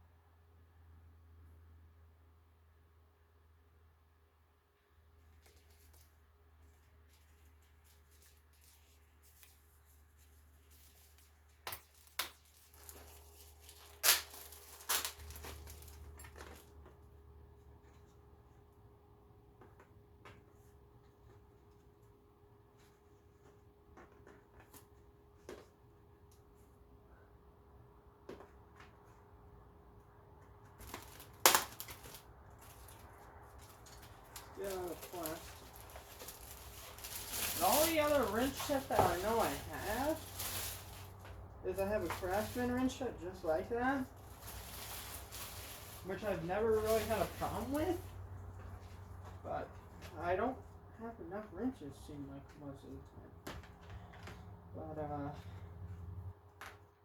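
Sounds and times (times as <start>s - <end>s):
packaging rustling and tearing: 7.1s - 16.8s, 30.7s - 48.2s.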